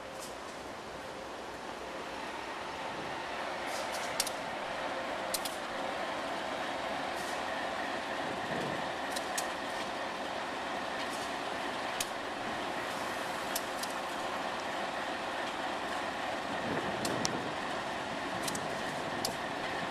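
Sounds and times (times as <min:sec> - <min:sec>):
diesel locomotive engine drone: 0:00.0 - 0:19.9
sharp metallic clicks: 0:05.3 - 0:05.6.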